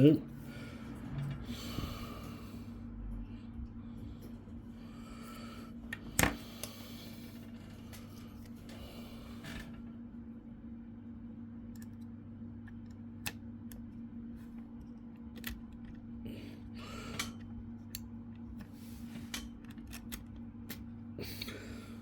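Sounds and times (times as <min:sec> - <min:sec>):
low electrical hum: 0:00.0 - 0:22.0
small clicks of laptop parts: 0:14.8 - 0:16.0, 0:17.2 - 0:20.9.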